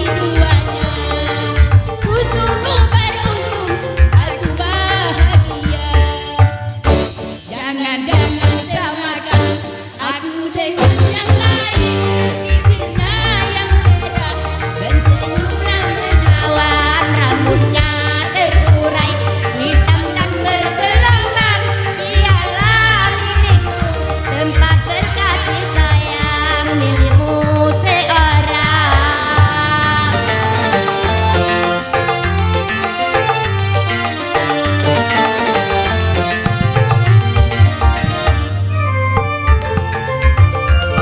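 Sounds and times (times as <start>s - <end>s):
wavering vocal line: 0.0s - 32.7s
driving drum and bass beat: 0.0s - 38.6s, 39.2s - 41.0s.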